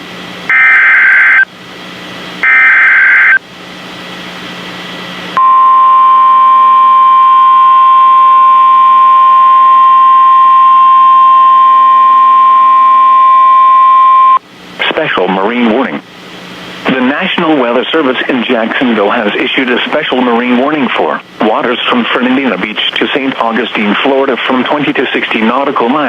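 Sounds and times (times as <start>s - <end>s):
digital data bursts: 0.5s - 1.4s, 2.4s - 3.4s
steady warning alarm tone: 0.5s - 1.5s, 2.4s - 3.4s, 5.4s - 14.4s.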